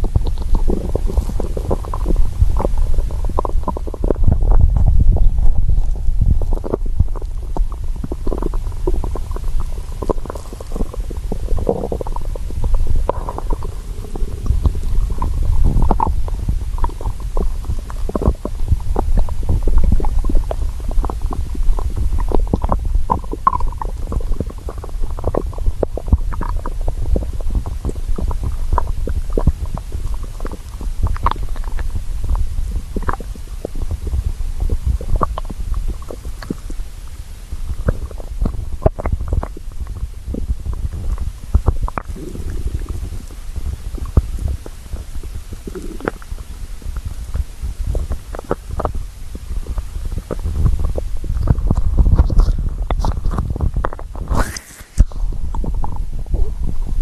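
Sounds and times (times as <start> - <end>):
stomach growling: 0.0 - 57.0
stomach gurgles: 0.0 - 57.0.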